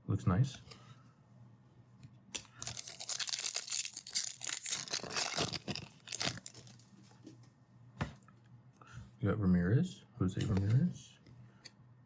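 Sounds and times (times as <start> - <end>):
foil wrapper tearing and crinkling: 2.4 - 7.0.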